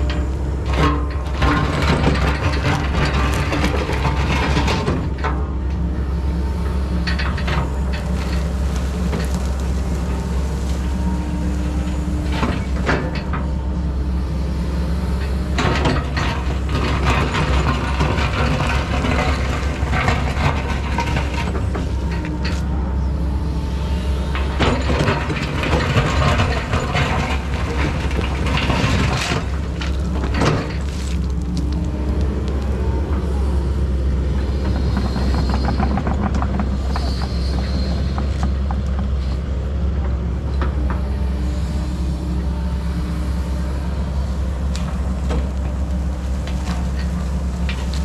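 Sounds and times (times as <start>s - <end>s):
excavator diesel engine running: 0.0s - 48.0s
knocks scrapes and crackles: 7.1s - 13.3s, 24.6s - 32.6s.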